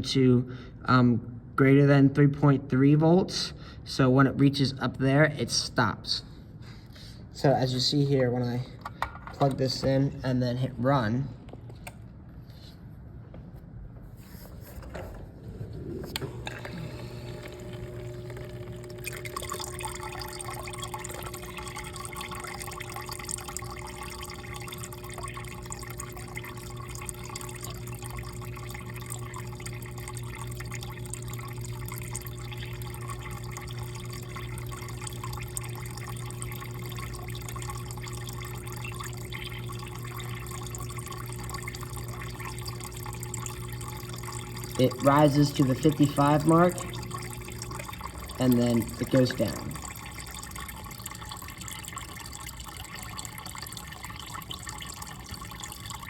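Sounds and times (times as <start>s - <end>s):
water pump humming: 14.3s - 56.0s
water splashing into container: 15.9s - 56.0s.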